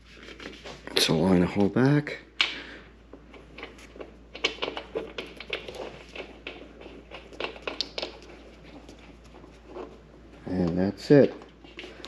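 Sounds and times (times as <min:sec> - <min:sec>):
small clicks taps and scrapes: 0:02.4 - 0:10.0.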